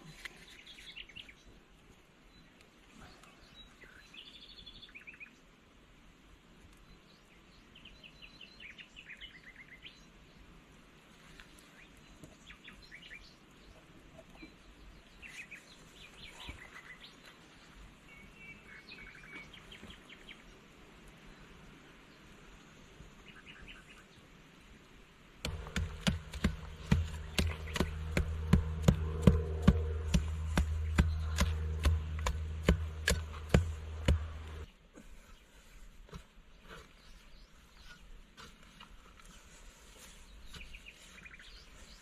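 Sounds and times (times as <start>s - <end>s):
birds chirping faintly: 25.4s - 42.0s
clicking beat: 25.5s - 34.7s
music with low bass: 25.5s - 34.7s.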